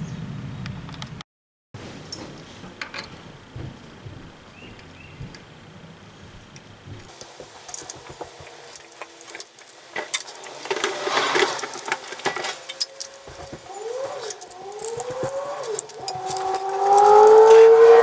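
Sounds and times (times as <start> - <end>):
metal tools clinking and rattling: 7.1 - 18.0.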